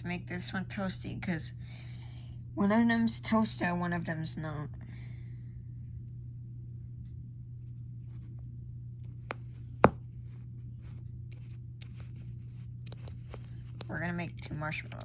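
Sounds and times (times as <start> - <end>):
steady low hum: 0.0 - 15.0
plastic bricks clicking together: 12.9 - 15.0.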